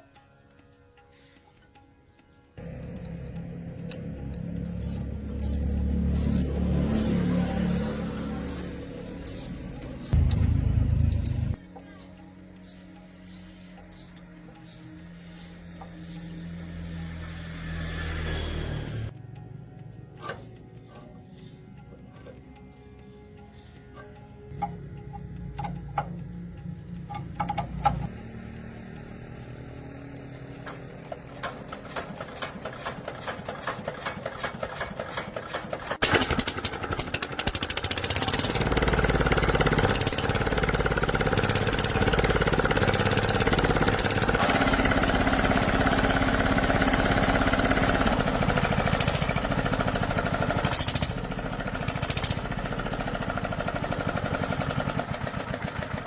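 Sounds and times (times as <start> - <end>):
diesel engine starting and clattering: 2.6 - 11.6, 30.5 - 56.0.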